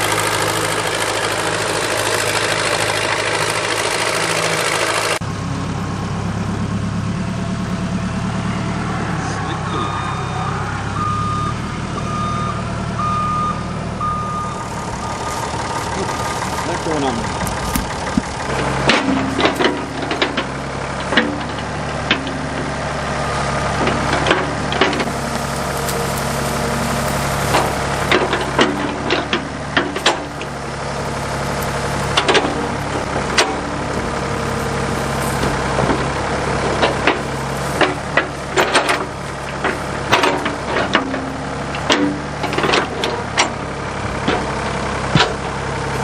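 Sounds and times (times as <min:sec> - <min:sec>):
backhoe engine running: 0:00.0 - 0:46.0
sharp knocks and clanks: 0:15.6 - 0:22.7, 0:23.8 - 0:45.6.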